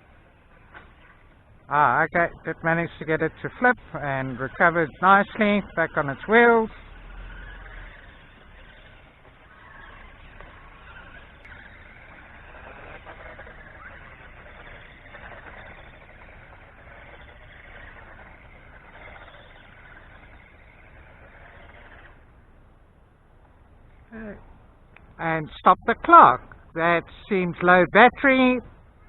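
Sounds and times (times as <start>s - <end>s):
small electric motor whining: 0.0s - 22.6s
tyre noise on wet ground: 0.0s - 25.2s.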